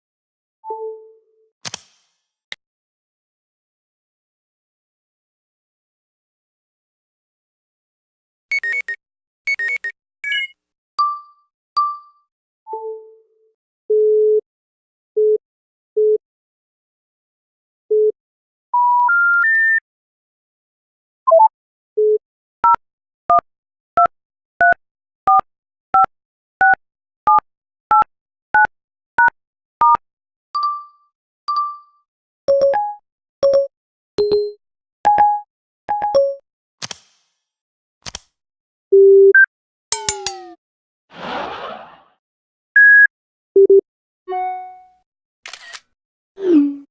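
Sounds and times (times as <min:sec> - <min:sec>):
electronic pings and beeps: 0:08.5 - 0:10.5
two-tone beeps: 0:08.5 - 0:11.2, 0:39.0 - 0:40.6, 0:42.8 - 0:44.8.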